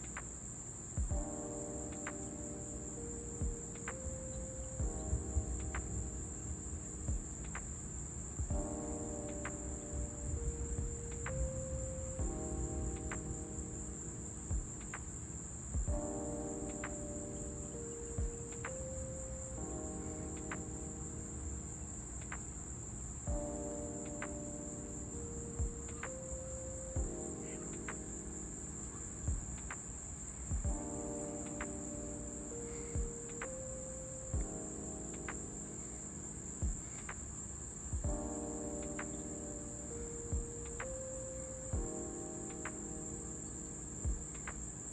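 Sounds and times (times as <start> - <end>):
insects chirring: 0.0 - 44.9.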